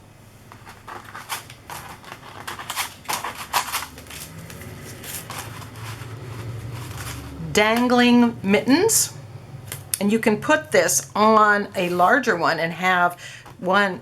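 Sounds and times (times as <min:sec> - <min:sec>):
faint low hum: 0:00.0 - 0:14.0
plastic sheets crinkling: 0:00.4 - 0:08.0, 0:11.3 - 0:13.7.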